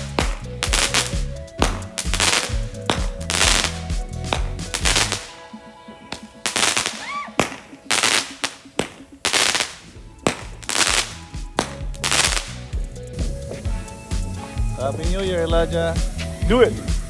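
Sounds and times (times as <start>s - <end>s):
fireworks exploding: 0.0s - 5.5s, 6.1s - 12.6s.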